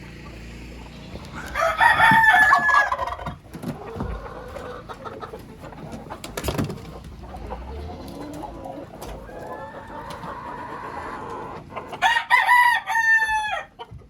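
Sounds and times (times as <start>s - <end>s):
chickens clucking: 0.0s - 14.0s
rooster crowing: 1.4s - 3.2s, 12.0s - 13.8s.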